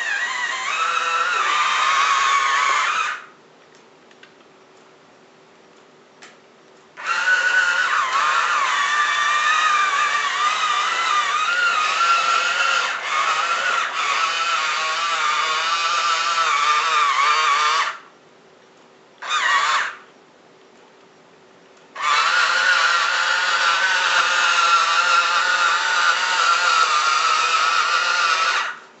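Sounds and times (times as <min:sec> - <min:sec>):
small electric motor whining: 0:00.0 - 0:03.3, 0:07.0 - 0:18.1, 0:19.2 - 0:20.1, 0:22.0 - 0:28.9.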